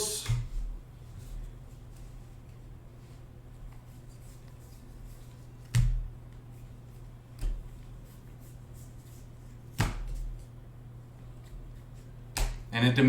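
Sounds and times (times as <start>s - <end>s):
cards slapped on a table: 5.6s - 6.1s, 9.7s - 10.4s, 12.3s - 12.7s.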